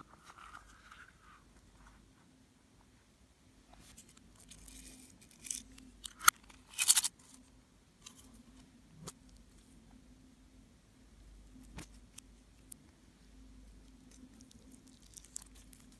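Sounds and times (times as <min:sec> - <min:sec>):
hands working slime: 0:13.7 - 0:15.9
slime crackling and popping: 0:13.8 - 0:15.9.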